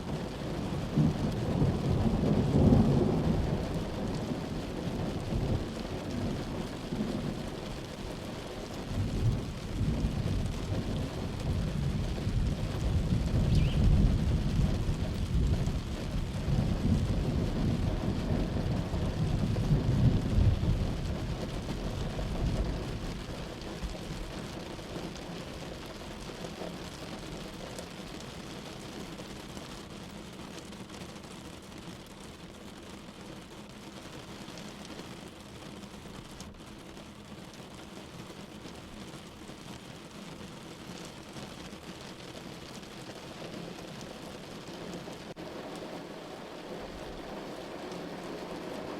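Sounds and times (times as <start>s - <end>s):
steady rain: 0.0s - 48.9s
rolling thunder: 8.9s - 23.0s.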